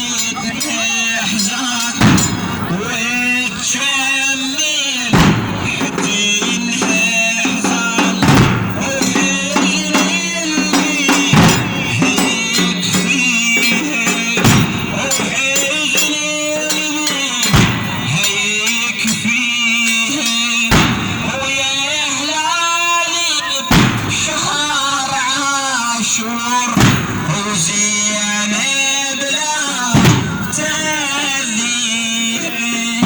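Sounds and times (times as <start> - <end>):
man chanting: 0.0 - 33.0
percussion beat: 0.0 - 33.0
heavy drum hit: 2.0 - 3.0, 5.2 - 16.1, 16.7 - 18.4, 20.7 - 21.6, 23.7 - 24.5, 26.8 - 27.4, 29.9 - 31.0.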